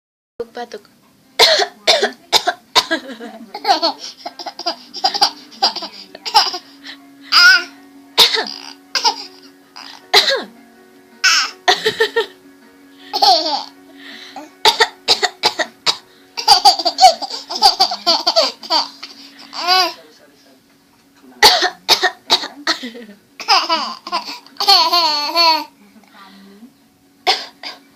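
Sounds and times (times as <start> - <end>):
background music with low note: 0.4 - 27.9
person coughing: 1.4 - 6.6, 8.2 - 9.3, 10.1 - 10.5, 11.7 - 12.3, 14.6 - 17.5, 21.4 - 24.4, 27.3 - 27.8
person laughing: 11.7 - 12.4.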